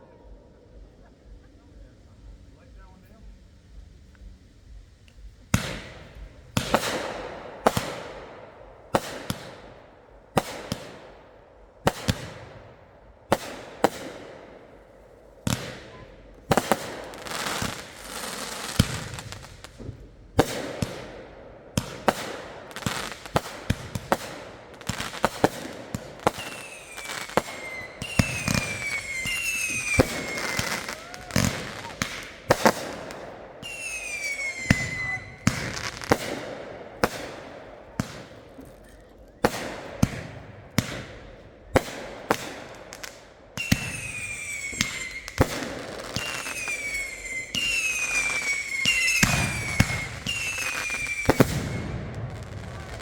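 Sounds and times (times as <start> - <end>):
fireworks bangs with crackling: 0.0 - 53.0
falling firework whistles: 26.2 - 36.4, 43.6 - 53.0.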